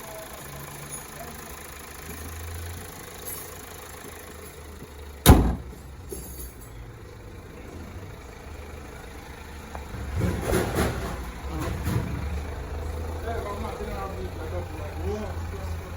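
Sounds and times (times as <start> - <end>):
car engine idling: 0.0 - 15.9
loud thud: 5.3 - 5.8.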